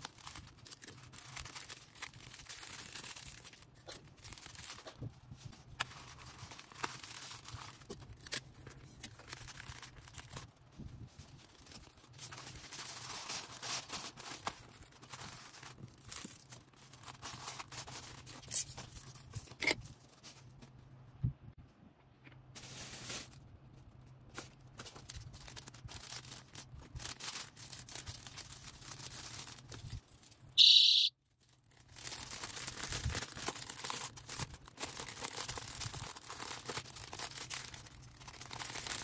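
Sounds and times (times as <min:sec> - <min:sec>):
plastic packaging crinkling: 0:00.0 - 0:20.5, 0:22.5 - 0:23.5, 0:24.3 - 0:30.6, 0:31.4 - 0:39.0.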